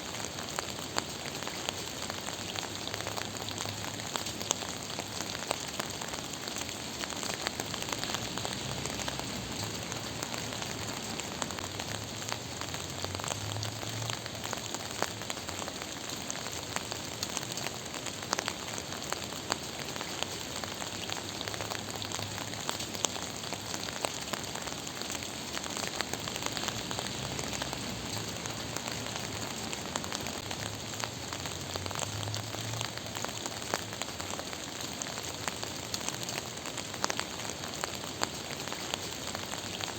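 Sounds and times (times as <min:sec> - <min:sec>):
gentle rain falling: 0:00.0 - 0:39.9.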